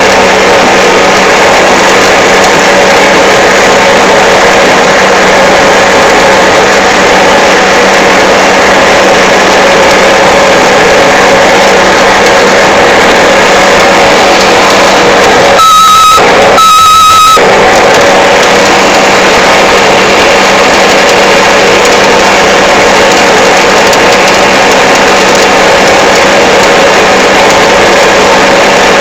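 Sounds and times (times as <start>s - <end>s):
diesel engine running: 0.0s - 29.0s
high electronic beeps: 15.4s - 17.5s.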